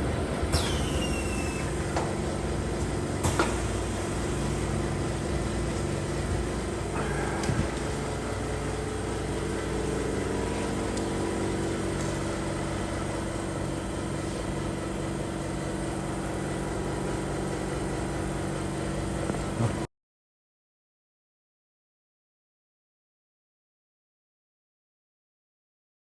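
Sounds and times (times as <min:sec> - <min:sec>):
industrial mixer humming: 0:00.0 - 0:19.9.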